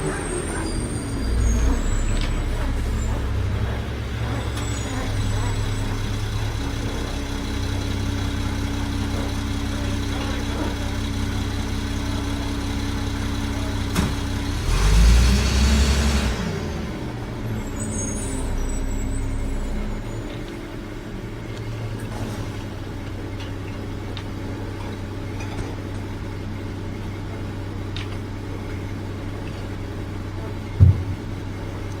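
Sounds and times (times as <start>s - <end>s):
low mechanical hum: 0.0s - 32.0s
short thump: 30.8s - 31.2s.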